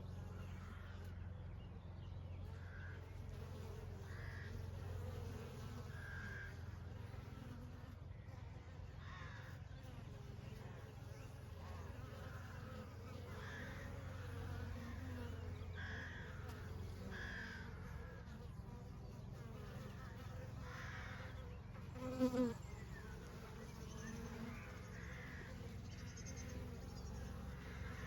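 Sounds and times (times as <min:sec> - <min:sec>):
honey bees buzzing: 0:02.3 - 0:28.0
short high-pitched bee calls: 0:19.4 - 0:28.0.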